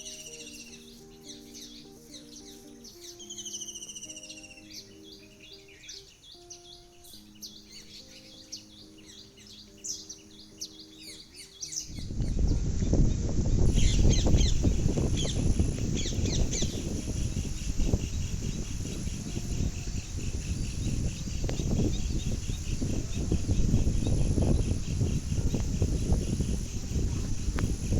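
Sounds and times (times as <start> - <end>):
small birds chirping: 0.0 - 27.9
soft background music: 0.0 - 27.9
heavy low rumble with hiss: 11.8 - 27.9.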